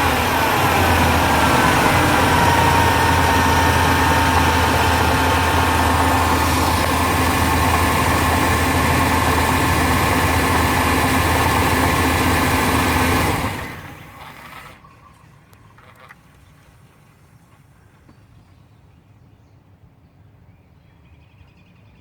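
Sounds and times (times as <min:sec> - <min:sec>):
engine switching off: 0:00.0 - 0:17.2
car engine idling: 0:00.0 - 0:17.7.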